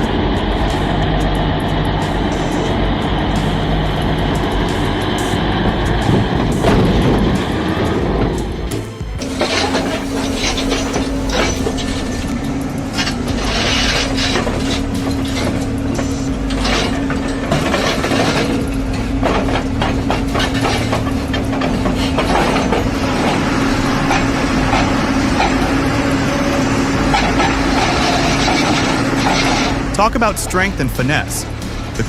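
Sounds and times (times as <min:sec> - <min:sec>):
heavy machine engine humming: 0:00.0 - 0:32.0
metallic clanks and knocks: 0:05.6 - 0:29.9.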